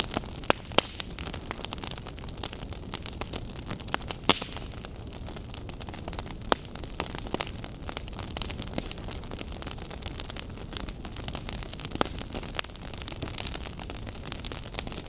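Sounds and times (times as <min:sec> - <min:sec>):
burning wood crackling and popping: 0:00.0 - 0:15.0
flames hissing and rumbling: 0:00.0 - 0:15.0.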